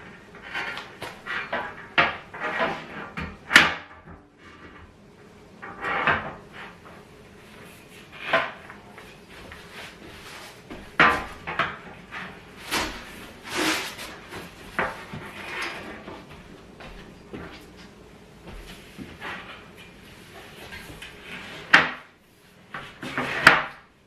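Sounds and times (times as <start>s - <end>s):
furniture parts knocking and scraping: 8.0s - 22.1s.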